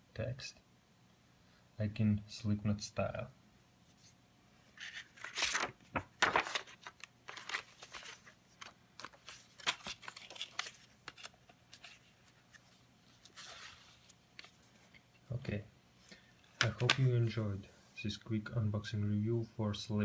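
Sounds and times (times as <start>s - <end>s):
paper pages rustling: 4.8s - 15.0s.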